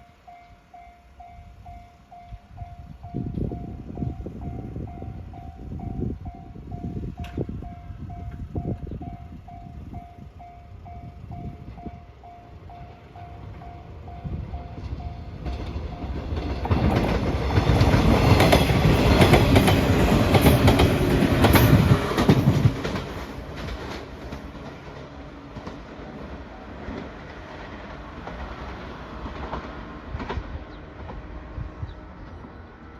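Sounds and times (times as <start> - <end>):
level-crossing warning bell: 0.0 - 17.1
train wheels clacking over rail joints: 14.8 - 31.5.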